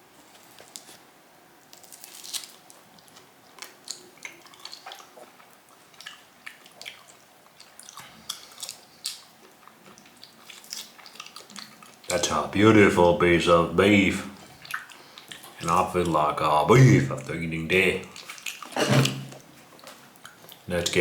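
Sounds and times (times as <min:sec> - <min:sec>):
person chewing raw meat: 0:01.8 - 0:12.2, 0:14.4 - 0:17.4, 0:18.0 - 0:20.9.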